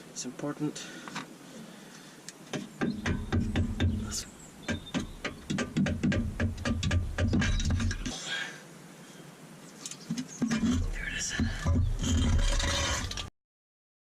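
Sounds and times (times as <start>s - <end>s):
hand tools clicking and knocking: 2.5s - 8.2s.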